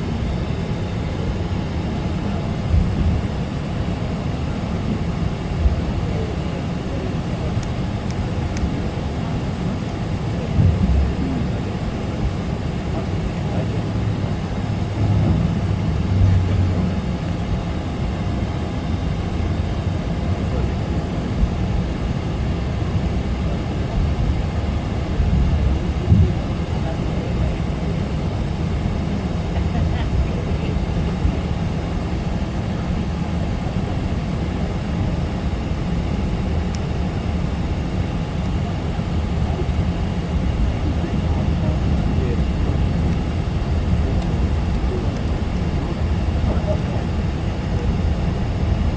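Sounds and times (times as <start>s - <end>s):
airplane cabin rumble: 0.0s - 48.9s
faint hum: 0.0s - 48.9s.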